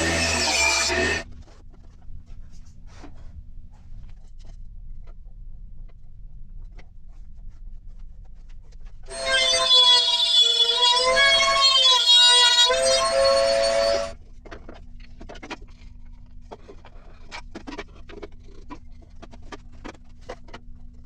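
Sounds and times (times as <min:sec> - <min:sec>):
power tool running: 0:00.0 - 0:01.2, 0:09.1 - 0:14.1.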